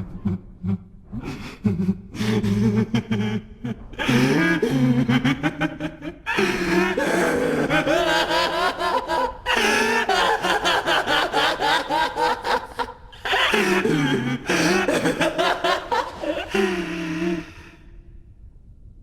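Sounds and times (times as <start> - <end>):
man laughing hard: 0.0 - 17.7.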